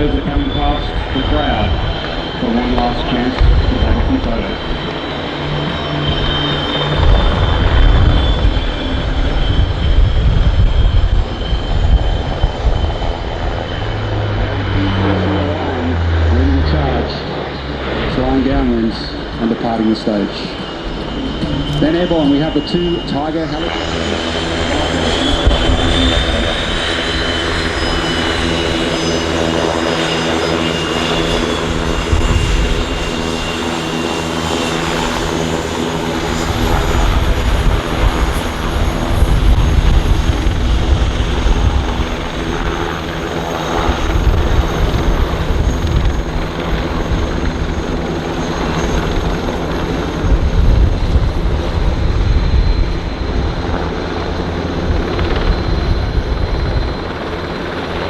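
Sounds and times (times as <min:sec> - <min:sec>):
low rumble: 0:00.0 - 0:29.1
helicopter rotor drone: 0:00.0 - 0:58.0
high whine: 0:00.0 - 0:58.0.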